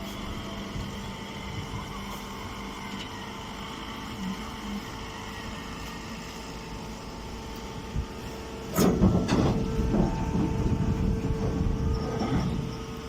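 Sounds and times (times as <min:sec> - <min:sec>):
baling machine humming: 0:00.0 - 0:13.0
loud clattering and knocking: 0:08.8 - 0:10.8.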